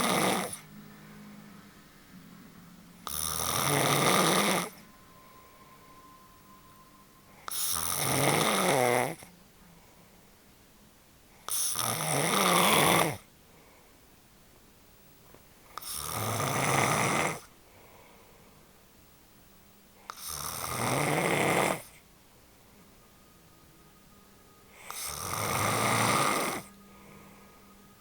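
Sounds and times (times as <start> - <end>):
woman snoring: 0.0 - 0.7, 3.0 - 4.8, 7.4 - 9.3, 11.5 - 13.3, 15.8 - 17.5, 20.1 - 22.0, 24.7 - 27.2
quiet breathing: 0.0 - 11.9, 12.6 - 14.4, 15.1 - 28.0.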